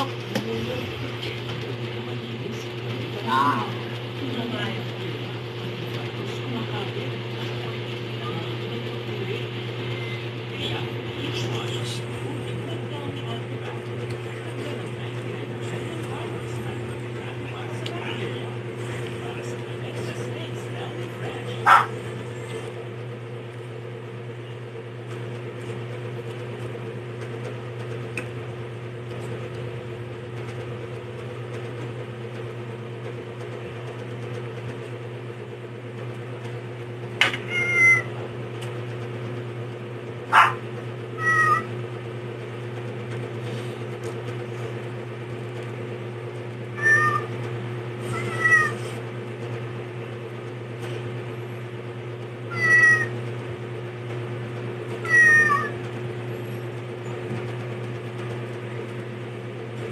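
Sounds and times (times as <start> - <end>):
steady low hum: 0.0 - 59.9
high-pitched animal calls: 21.7 - 21.9, 37.4 - 38.1, 40.3 - 40.6, 41.2 - 41.7, 46.8 - 47.4, 48.0 - 48.9, 52.5 - 53.2, 55.0 - 55.8.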